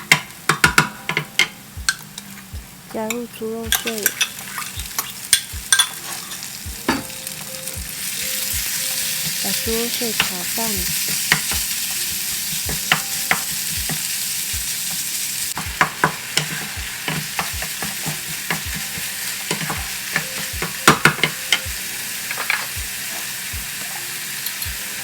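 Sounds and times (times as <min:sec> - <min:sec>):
spatula knocking and scraping pan: 0:03.7 - 0:21.7
meat sizzling in a pan: 0:03.8 - 0:25.0.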